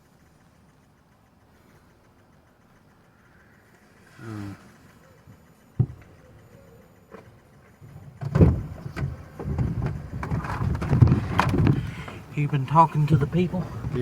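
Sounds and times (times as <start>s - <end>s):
rumbling handling noise: 3.6s - 14.0s.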